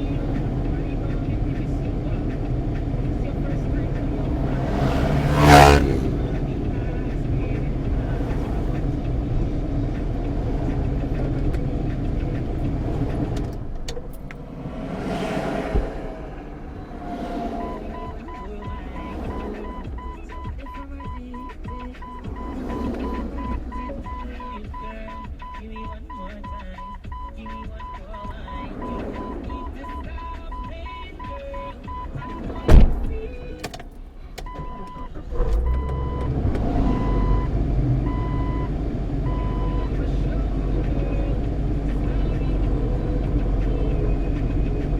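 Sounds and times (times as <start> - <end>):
vehicle engine running: 0.0 - 44.9
vehicle passing: 0.0 - 44.9
short thump: 15.2 - 16.6, 32.1 - 33.8
rapid high beeping: 17.5 - 33.4.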